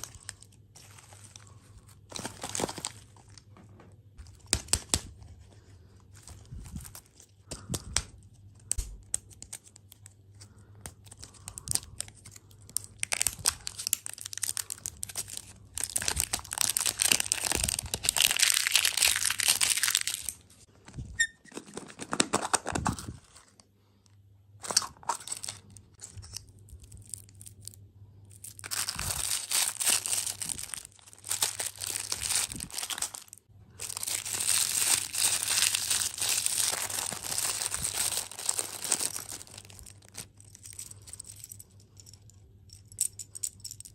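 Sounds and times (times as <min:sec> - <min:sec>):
plastic packaging crinkling: 0:00.0 - 0:03.6, 0:11.0 - 0:23.6, 0:24.6 - 0:41.1.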